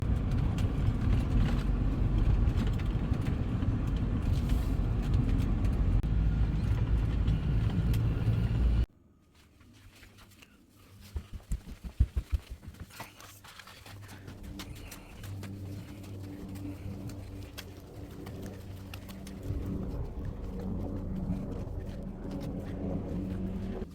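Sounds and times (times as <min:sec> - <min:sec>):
vehicle rumbling: 0:00.0 - 0:08.9, 0:13.9 - 0:23.9.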